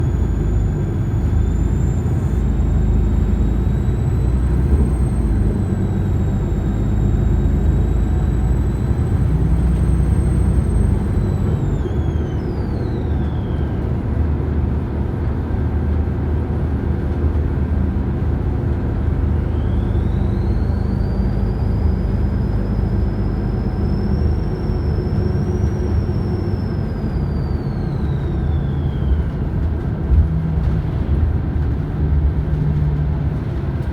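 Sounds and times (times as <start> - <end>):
high-pitched whine: 0.0 - 13.8, 19.4 - 29.4
bus engine rumble: 0.0 - 33.9.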